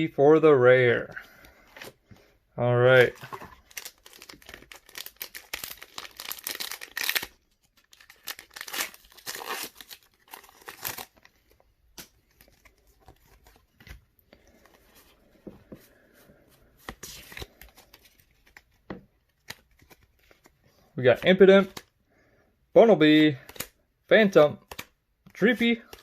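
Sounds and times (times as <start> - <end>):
foil wrapper tearing and crinkling: 3.6 - 11.2.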